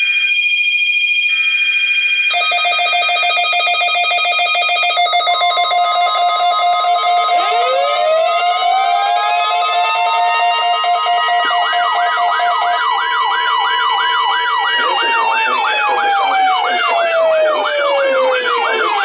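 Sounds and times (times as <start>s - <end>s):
electronic alarm tones: 0.0s - 19.0s
siren winding up: 0.0s - 19.0s.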